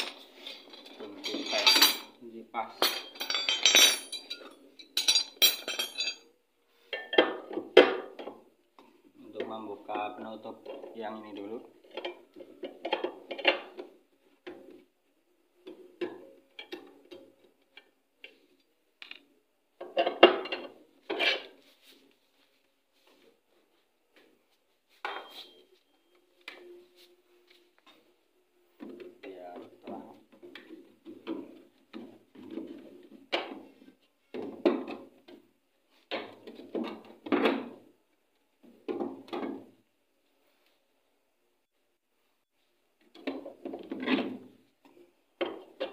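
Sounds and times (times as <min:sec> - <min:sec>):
wrench clinking on metal: 0:00.0 - 0:02.1, 0:02.8 - 0:06.3
metal wrench clunks and scrapes: 0:00.0 - 0:02.2, 0:19.8 - 0:21.8, 0:25.0 - 0:25.7.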